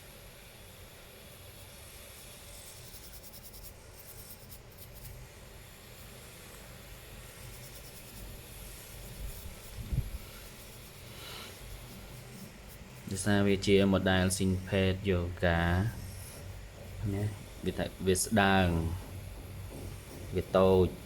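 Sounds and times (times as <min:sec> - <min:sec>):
steady hiss: 0:00.0 - 0:21.0
faint rubbing and scratching: 0:01.2 - 0:05.2, 0:05.8 - 0:21.0
small ticks: 0:01.3 - 0:05.2.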